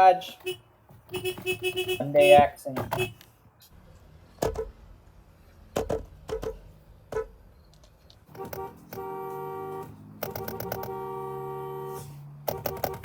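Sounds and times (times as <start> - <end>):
car horn sounding steadily: 0.2 - 3.3, 6.3 - 7.4, 8.3 - 13.0.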